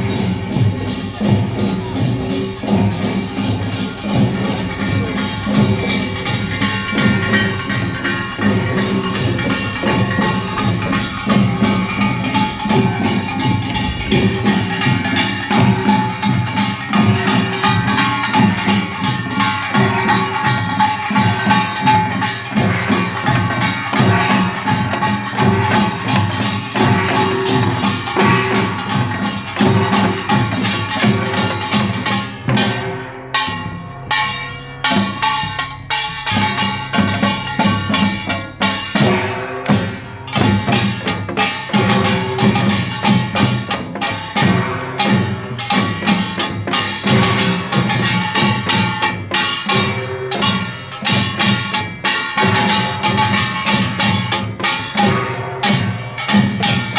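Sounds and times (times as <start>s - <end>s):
percussion band playing: 0.0s - 56.9s
low ringing gong tone: 10.1s - 16.1s.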